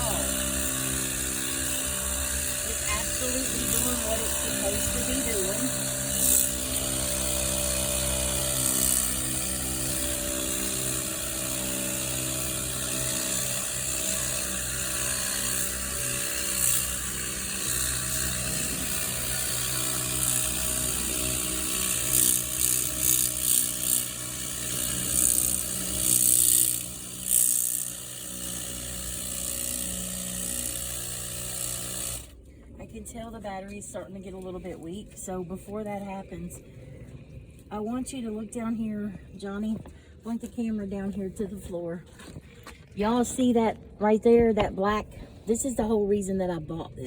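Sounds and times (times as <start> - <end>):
pressure washer pump humming: 0.0 - 32.4.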